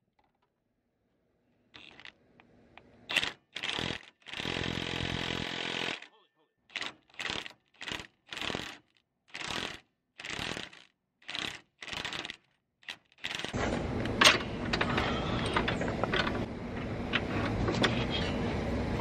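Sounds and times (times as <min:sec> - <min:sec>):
ratchet wrench clicking: 0:01.8 - 0:02.1, 0:03.1 - 0:04.9, 0:06.7 - 0:13.6.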